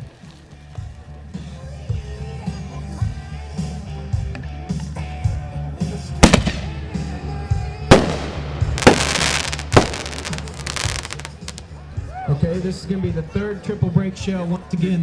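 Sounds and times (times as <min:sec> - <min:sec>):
background music: 0:00.0 - 0:15.0
firework bangs: 0:06.2 - 0:06.9, 0:07.9 - 0:11.6
firework crackling: 0:06.2 - 0:07.1, 0:07.9 - 0:11.7.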